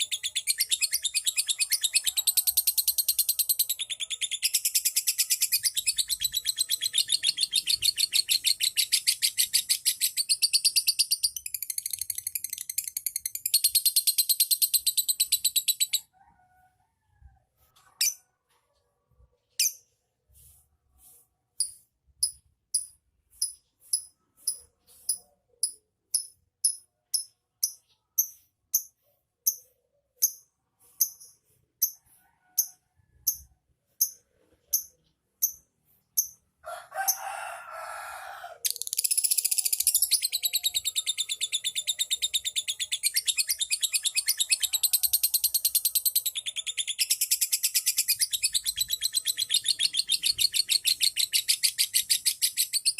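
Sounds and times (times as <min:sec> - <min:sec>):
bird chattering trill: 0:00.0 - 0:16.0
bird chirping: 0:00.0 - 0:16.1, 0:38.7 - 0:52.9.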